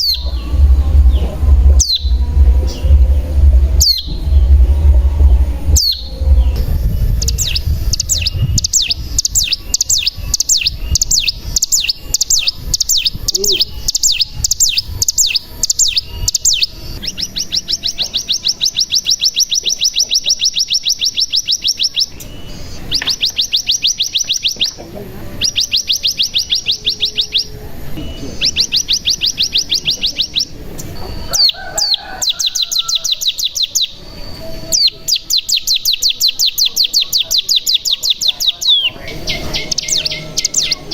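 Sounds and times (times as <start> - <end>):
bird singing high repeated notes: 0.0 - 24.8, 25.4 - 40.9
fast buzzing bird trills: 5.8 - 24.7.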